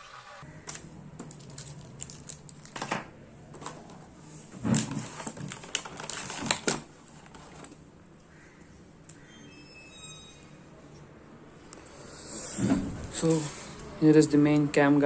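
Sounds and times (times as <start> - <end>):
plastic packaging crinkling: 1.2 - 3.0, 4.6 - 7.8.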